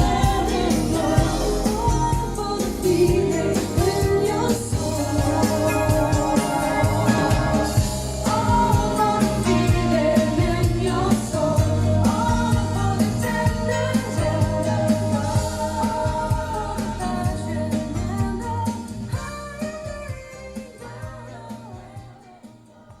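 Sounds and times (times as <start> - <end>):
pop song with singing: 0.0 - 23.0.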